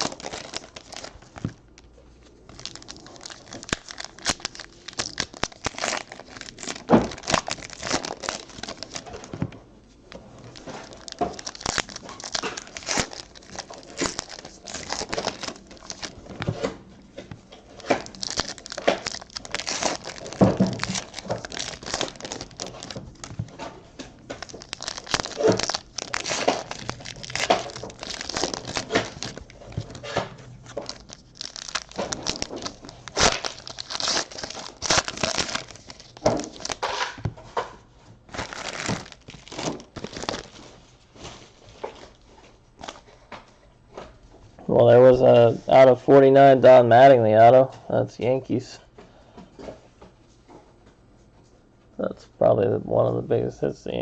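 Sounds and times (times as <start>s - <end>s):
cards rustling: 0.0s - 9.4s, 10.1s - 37.2s, 38.3s - 40.7s
wrappers crinkling: 0.0s - 9.5s, 10.1s - 37.3s, 38.3s - 43.2s.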